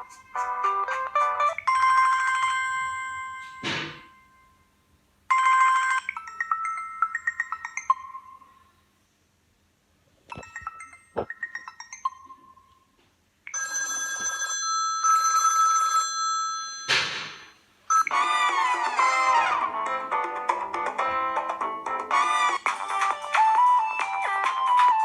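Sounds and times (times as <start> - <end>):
electronic ringtone melody: 0.0 - 4.5, 5.3 - 8.7, 10.3 - 12.8, 17.9 - 20.1, 22.1 - 25.0.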